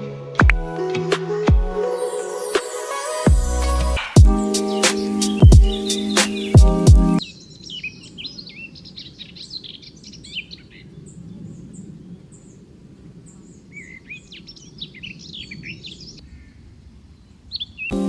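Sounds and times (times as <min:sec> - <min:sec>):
small birds chirping: 0:03.6 - 0:18.0.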